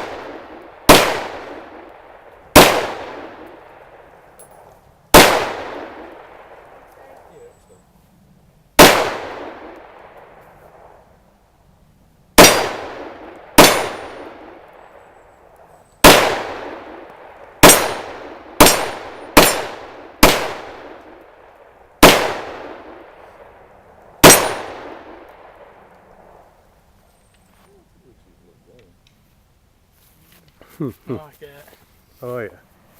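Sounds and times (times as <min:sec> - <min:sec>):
pistol shots echoing: 0:00.0 - 0:04.4, 0:05.1 - 0:06.9, 0:08.8 - 0:10.3, 0:12.4 - 0:15.0, 0:16.0 - 0:21.2, 0:22.0 - 0:23.6, 0:24.2 - 0:26.3.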